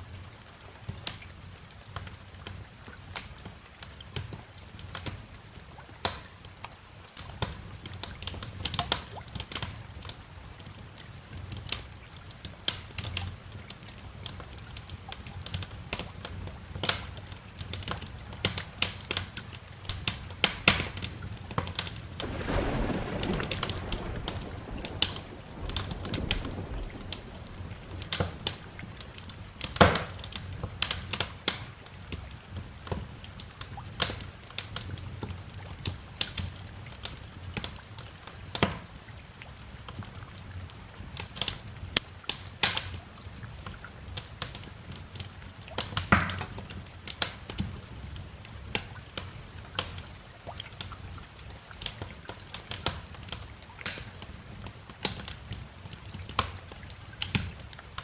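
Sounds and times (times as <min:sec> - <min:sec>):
wood fire crackling and popping: 0:16.8 - 0:35.0, 0:48.6 - 0:58.0
rain hissing: 0:19.9 - 0:32.2
thunder rumbling: 0:22.0 - 0:30.9.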